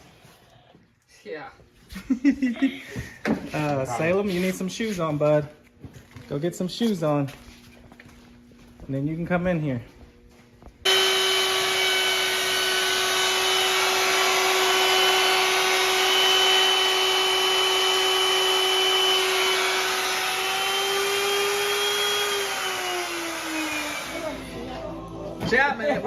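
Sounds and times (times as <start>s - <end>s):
electric motor whining: 10.9s - 24.8s.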